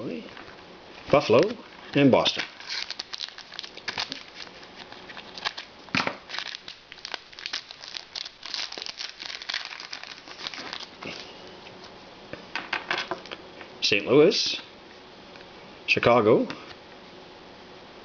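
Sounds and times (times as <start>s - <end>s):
wrapper crinkling and tearing: 1.2s - 11.3s.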